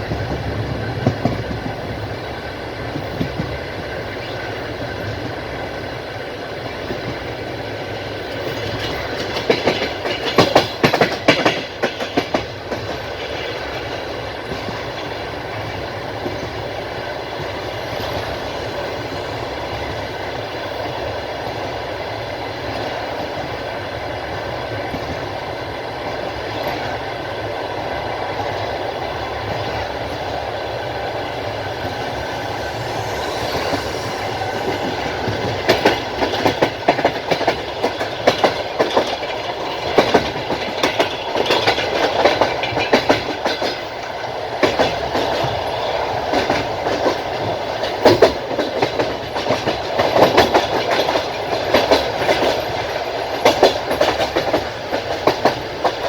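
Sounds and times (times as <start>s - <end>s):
train rumbling on track: 0.0s - 56.0s
wheels clacking over rail joints: 8.0s - 20.0s, 26.0s - 56.0s.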